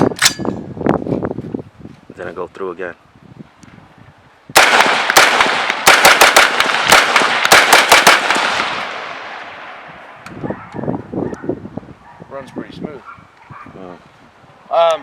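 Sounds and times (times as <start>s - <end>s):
rifle shots in rapid succession: 4.6s - 9.7s
gunshot echo: 4.6s - 9.9s.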